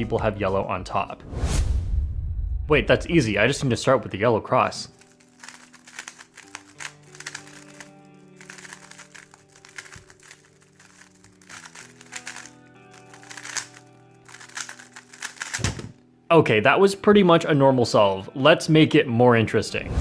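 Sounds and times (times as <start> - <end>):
background music of held chords: 0.0 - 1.3
puzzle cube layers clicking: 5.0 - 15.8.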